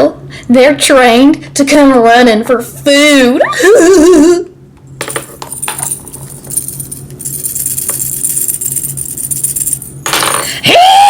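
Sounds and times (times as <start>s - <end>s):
small bell jingling: 5.1s - 10.1s.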